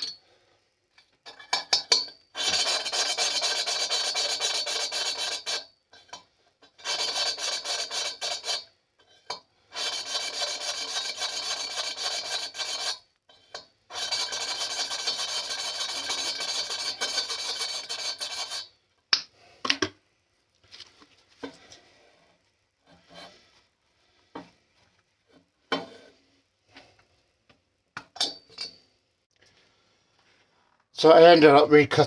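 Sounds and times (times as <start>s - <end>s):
valve grinding paste rasp: 2.4s - 5.7s, 6.6s - 8.7s, 9.7s - 13.0s, 13.9s - 18.7s.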